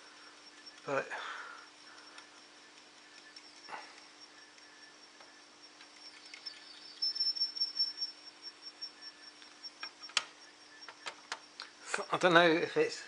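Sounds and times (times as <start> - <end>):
floppy disk head ticking: 0.0 - 6.6
faint high whine: 0.0 - 13.0
steady hum: 0.0 - 13.0.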